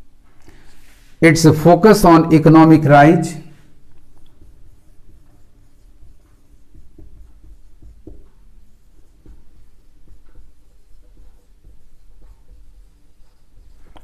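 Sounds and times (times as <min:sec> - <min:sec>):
pen scratching on paper: 0:03.6 - 0:14.0
writing tool tapping: 0:03.8 - 0:14.0.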